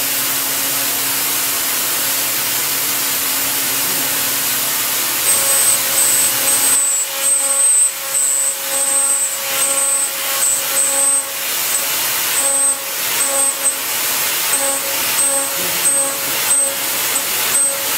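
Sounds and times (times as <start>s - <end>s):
milling machine cutting whine: 0.0s - 17.9s
steady hiss: 1.5s - 17.9s.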